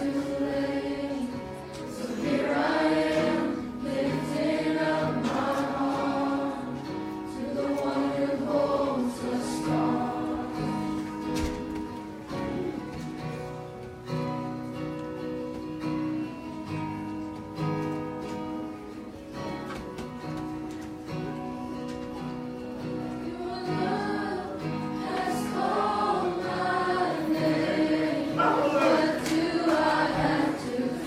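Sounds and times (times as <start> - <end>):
people singing: 0.0 - 13.0, 22.8 - 31.0
guitar chords: 0.0 - 31.0.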